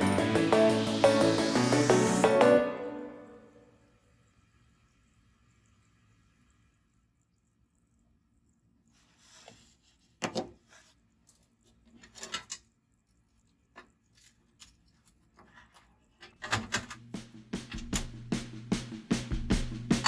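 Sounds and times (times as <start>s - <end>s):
music with a beat: 0.0s - 3.4s, 17.1s - 20.0s.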